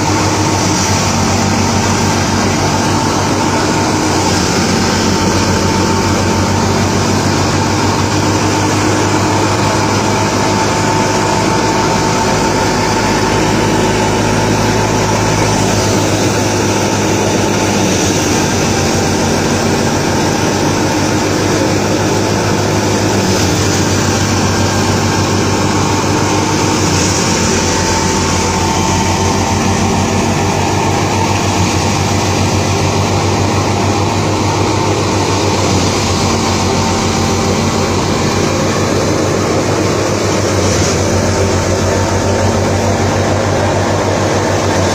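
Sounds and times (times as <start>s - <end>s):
thresher machine droning: 0.0s - 44.9s.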